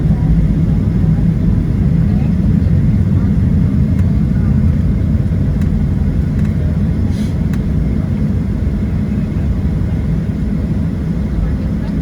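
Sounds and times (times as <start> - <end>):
airplane cabin rumble: 0.0 - 12.0
brief hiss: 7.1 - 7.4.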